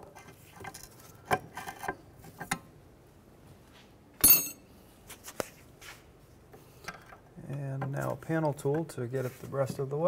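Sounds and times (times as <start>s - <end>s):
ringing metallic clink: 4.2s - 4.6s.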